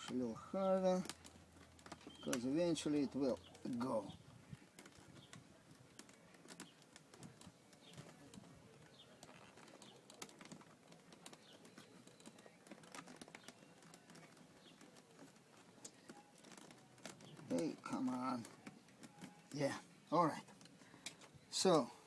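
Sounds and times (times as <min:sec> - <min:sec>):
screwdriver clicking and scraping plastic: 0:04.5 - 0:17.6.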